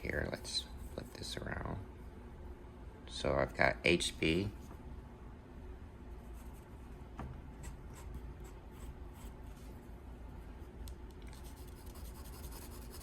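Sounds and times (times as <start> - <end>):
pencil scratching on paper: 11.4 - 13.0.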